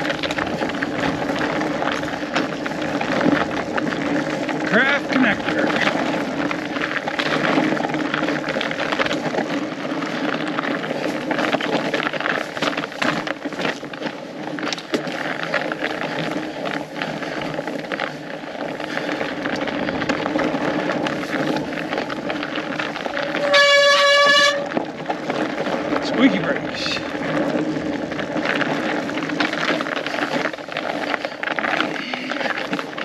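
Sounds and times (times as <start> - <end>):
bike knocks and rattles: 0.0 - 33.0
bike tyres on icy trail: 0.0 - 33.0
brake squeal: 23.1 - 24.9.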